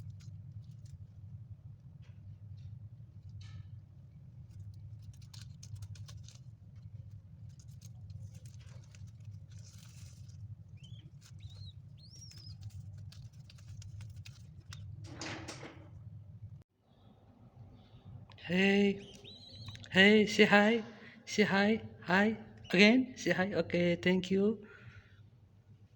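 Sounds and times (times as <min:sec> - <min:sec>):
beak tapping on grains: 0:04.5 - 0:15.4, 0:19.0 - 0:19.9
high bird peeps: 0:09.5 - 0:15.0, 0:18.9 - 0:20.0.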